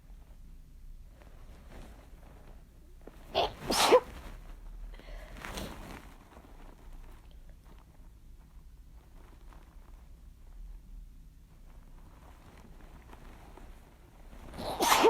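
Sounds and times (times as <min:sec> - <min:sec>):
person sneezing: 0:03.4 - 0:04.1, 0:14.6 - 0:15.0.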